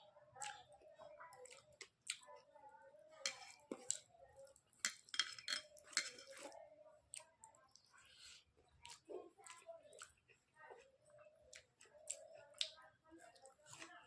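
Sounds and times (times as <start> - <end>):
wet chewing and lip smacks: 1.3 - 2.5, 3.3 - 5.1, 5.8 - 14.0.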